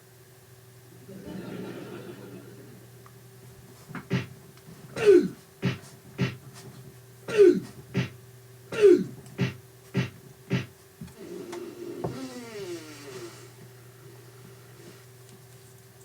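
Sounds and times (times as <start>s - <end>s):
steady low hum: 0.7s - 15.4s
rhythmic vocal mouth sounds: 4.0s - 4.3s, 5.0s - 6.4s, 7.3s - 8.2s, 8.8s - 10.7s.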